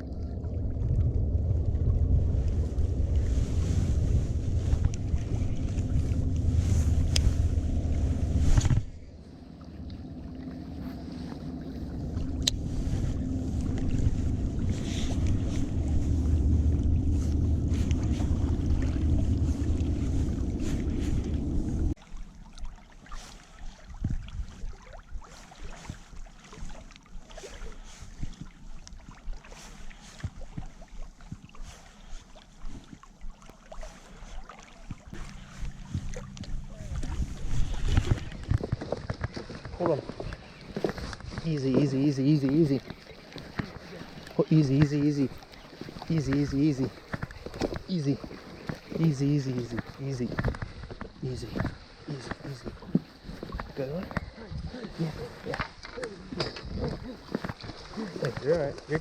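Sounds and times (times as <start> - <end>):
wind buffeting microphone: 0.0 - 22.0, 34.9 - 59.0
small waves lapping: 0.0 - 59.0.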